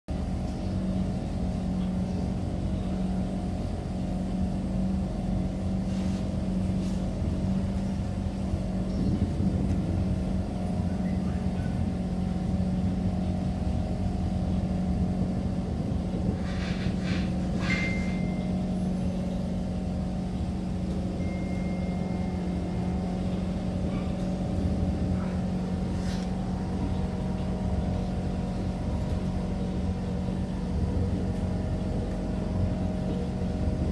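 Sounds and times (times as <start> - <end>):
train cabin hum and rumble: 0.1 - 33.9
short high squeals: 16.4 - 18.5.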